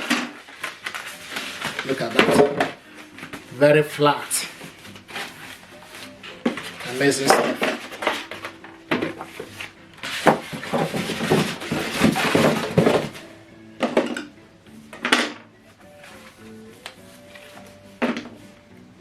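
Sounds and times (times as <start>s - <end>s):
packaging rustling and clattering: 0.0s - 3.6s, 4.2s - 13.3s
quiet background music: 0.0s - 19.0s.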